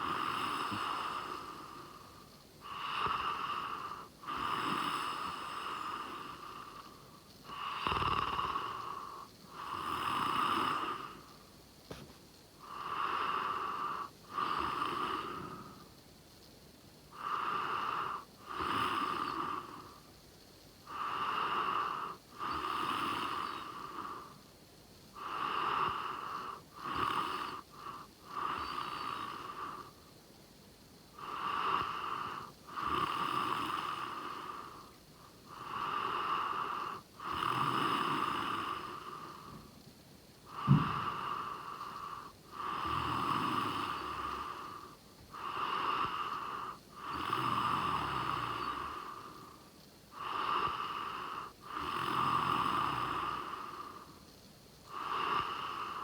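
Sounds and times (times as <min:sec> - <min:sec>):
person snoring: 0:00.0 - 0:01.8, 0:07.5 - 0:11.2, 0:25.2 - 0:29.9, 0:31.2 - 0:34.9, 0:35.5 - 0:39.6, 0:40.5 - 0:49.4, 0:50.2 - 0:54.1, 0:54.9 - 0:56.0.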